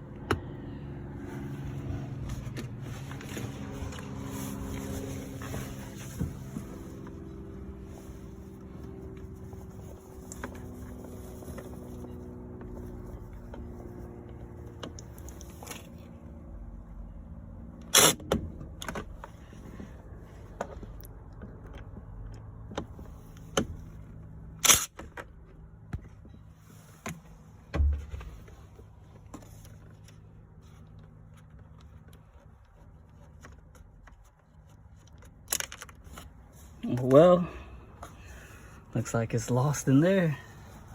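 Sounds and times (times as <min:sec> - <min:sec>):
dull thump: 0:27.7 - 0:28.5.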